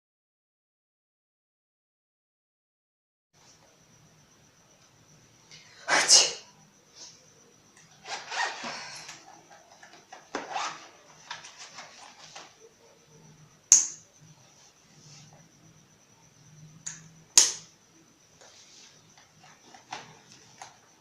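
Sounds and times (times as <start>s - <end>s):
person sneezing: 5.8s - 6.5s
sharp click: 13.7s - 14.0s, 16.8s - 17.7s.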